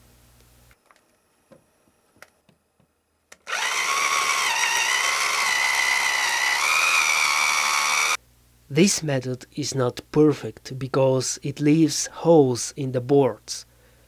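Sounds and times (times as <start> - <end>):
electric drill with hole saw: 3.5 - 8.2.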